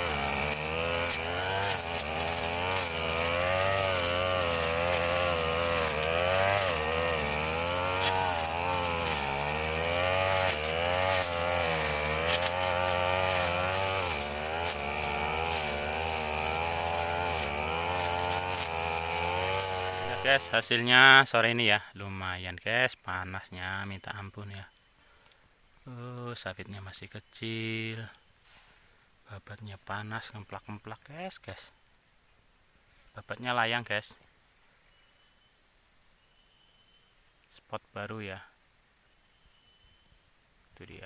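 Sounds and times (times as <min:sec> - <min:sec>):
brush cutter engine under load: 0:00.0 - 0:21.4.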